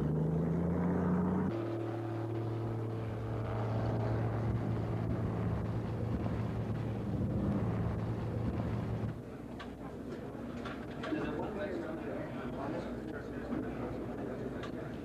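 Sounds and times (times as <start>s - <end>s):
motor vehicle running: 0.0s - 11.1s.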